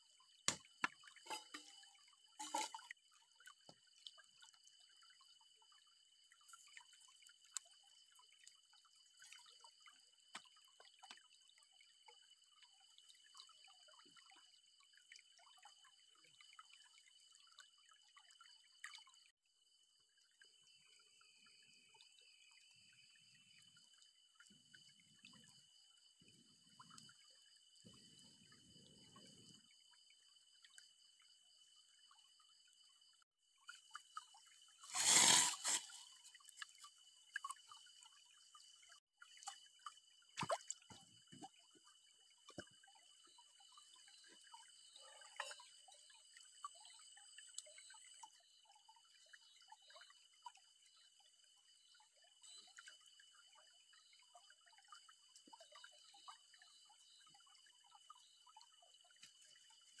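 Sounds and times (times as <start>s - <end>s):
faint drips and ticks: 0.0s - 35.0s, 35.6s - 60.0s
water splashing: 0.5s - 3.4s, 34.8s - 36.8s.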